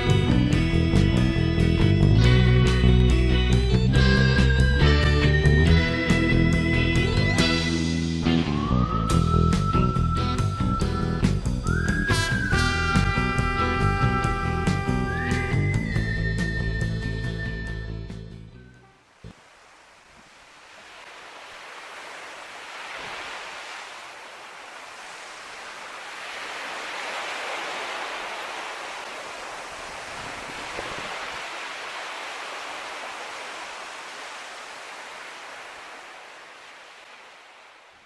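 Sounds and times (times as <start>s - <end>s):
waves washing onto beach: 19.0s - 38.0s.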